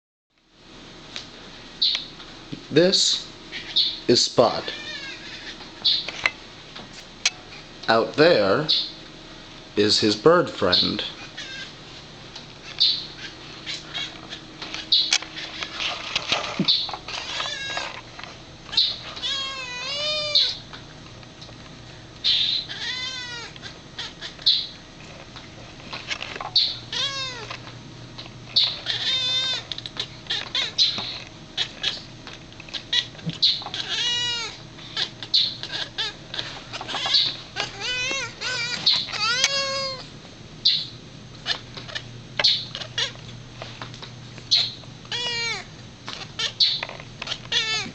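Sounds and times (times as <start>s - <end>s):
cat chirping and chattering: 3.5s - 4.1s, 4.7s - 6.1s, 8.7s - 8.9s, 10.8s - 11.8s, 12.6s - 15.8s, 16.6s - 18.0s, 18.7s - 20.6s, 22.2s - 24.8s, 26.4s - 27.6s, 28.5s - 32.1s, 32.7s - 43.2s, 44.5s - 47.9s
cat high squeaks: 4.6s - 6.1s, 11.2s - 11.7s, 16.7s - 17.9s, 18.7s - 20.6s, 22.2s - 24.8s, 26.5s - 27.5s, 28.6s - 32.1s, 32.8s - 40.9s, 44.5s - 45.7s, 46.3s - 47.9s.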